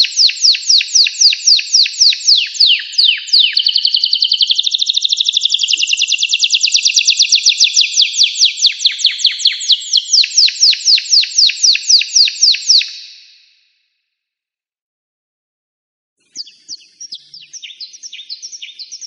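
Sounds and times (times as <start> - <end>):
canary singing trill: 0.0 - 13.2, 16.2 - 19.0.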